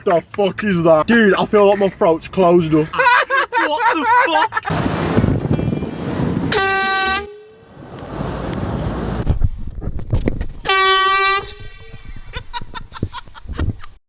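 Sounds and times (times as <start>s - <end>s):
air horn blast: 4.7s - 9.2s
rushing noise: 4.7s - 9.2s.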